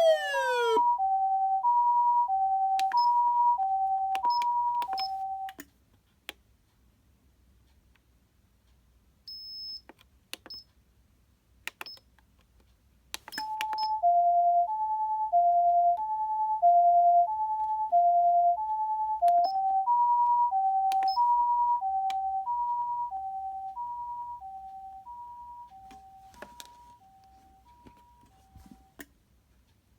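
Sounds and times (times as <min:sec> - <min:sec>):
two-tone ambulance siren: 0:00.0 - 0:05.3, 0:13.4 - 0:28.9.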